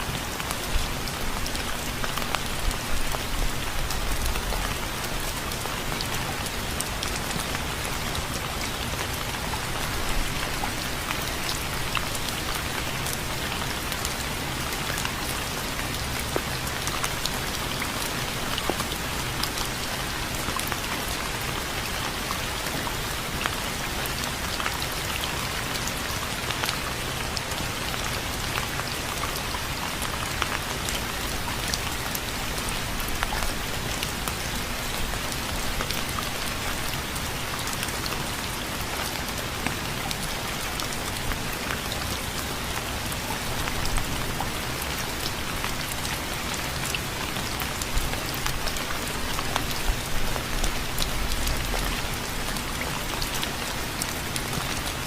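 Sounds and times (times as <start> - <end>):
raindrops ticking on a surface: 0.0 - 55.0
steady rain falling: 0.0 - 55.0.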